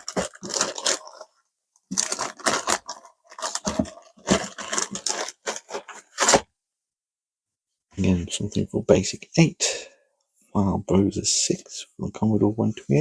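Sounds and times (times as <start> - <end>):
plastic bag crinkling: 0.0 - 6.5.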